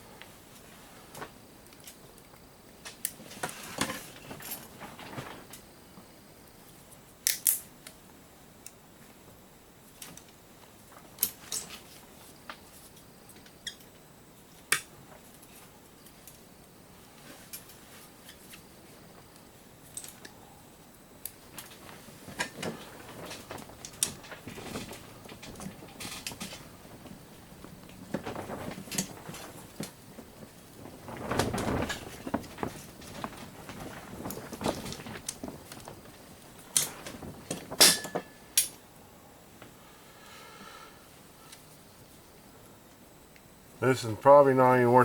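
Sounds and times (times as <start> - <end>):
sharp clicks and snaps: 7.2 - 8.0.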